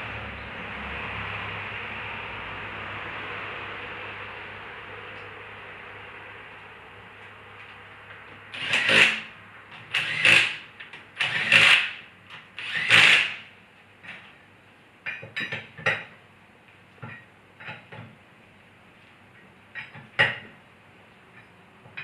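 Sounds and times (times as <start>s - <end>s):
impact wrench bursts: 8.5s - 12.0s, 12.6s - 13.5s.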